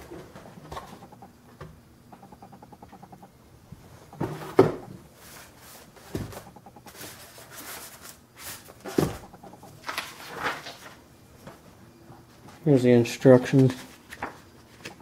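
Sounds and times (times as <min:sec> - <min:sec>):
packaging rustling: 0:06.9 - 0:11.0.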